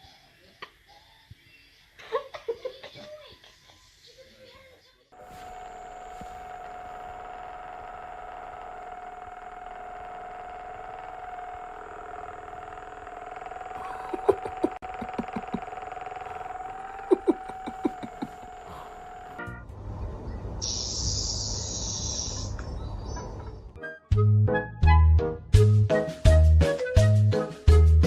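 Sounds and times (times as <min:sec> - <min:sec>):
steady motor hum: 0:05.2 - 0:22.6.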